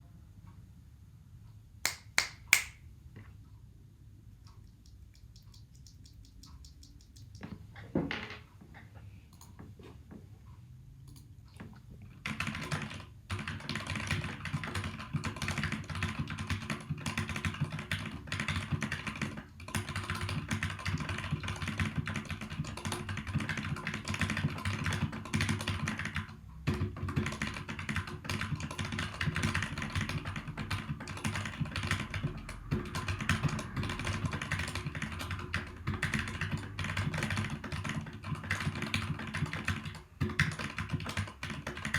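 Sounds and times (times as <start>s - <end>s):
mechanical keyboard typing: 12.2s - 41.9s.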